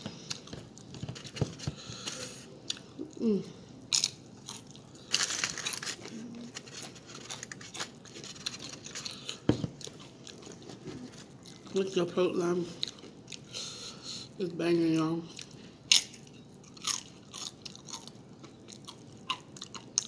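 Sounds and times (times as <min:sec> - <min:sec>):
person humming: 0:03.0 - 0:03.6.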